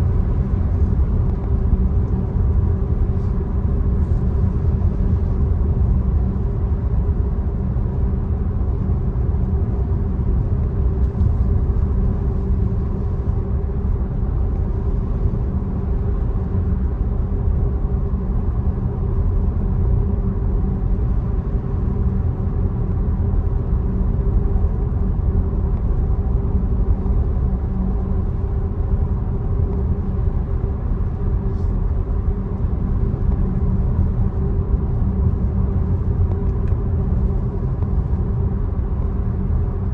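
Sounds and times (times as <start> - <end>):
faint hum: 0.0 - 39.9.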